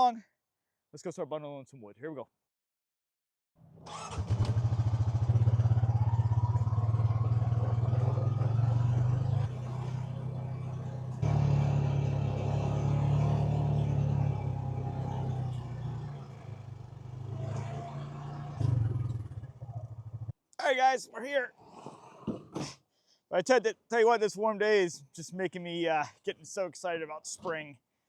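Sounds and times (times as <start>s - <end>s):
utility vehicle engine running: 3.8s - 20.3s.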